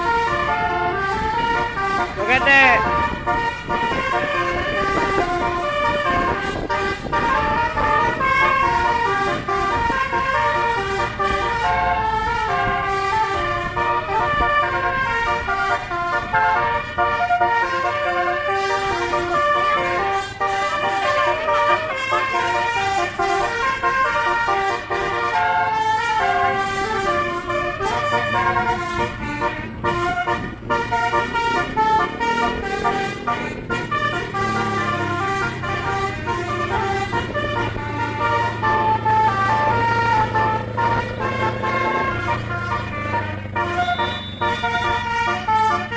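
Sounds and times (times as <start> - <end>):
tuned bus air horn tune: 0.0 - 45.9.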